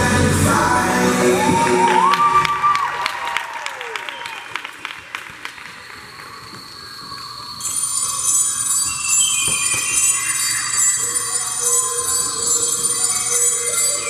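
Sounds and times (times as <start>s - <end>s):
show music over speakers: 0.0s - 2.8s
shimmering bell-like jingle: 5.6s - 14.0s.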